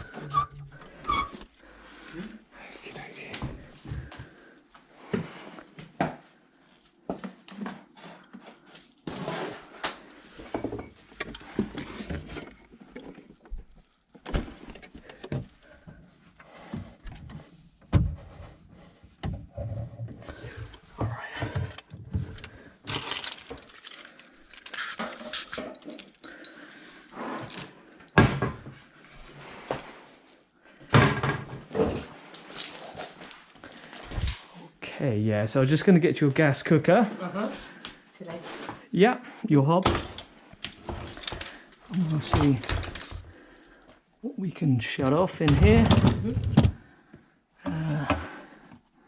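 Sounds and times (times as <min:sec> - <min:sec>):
objects clinking and knocking: 0:21.5 - 0:26.6, 0:39.8 - 0:43.5.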